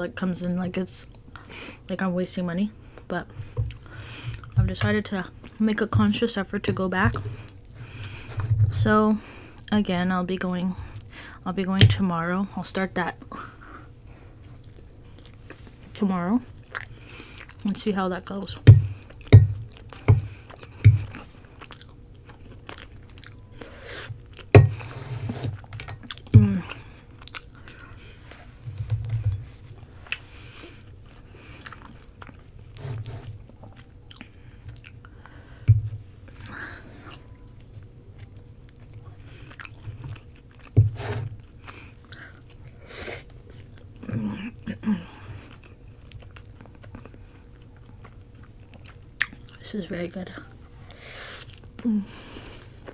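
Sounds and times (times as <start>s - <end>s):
chewing and biting bread: 16.5s - 17.7s, 18.5s - 44.1s, 45.4s - 49.6s.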